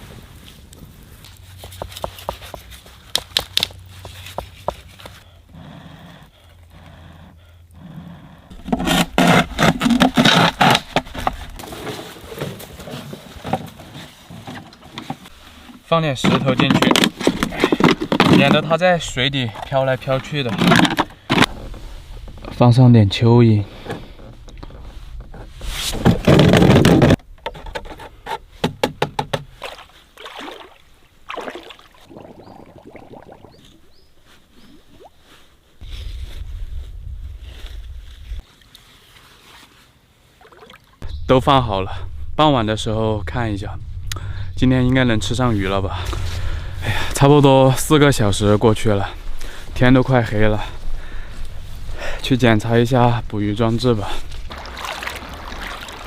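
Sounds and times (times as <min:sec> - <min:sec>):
hands scraping and rustling: 0:00.0 - 0:05.2
water splashing: 0:29.5 - 0:35.4, 0:40.3 - 0:41.0, 0:53.8 - 0:56.0
water sloshing: 0:29.5 - 0:35.5, 0:38.5 - 0:41.0, 0:53.6 - 0:56.0.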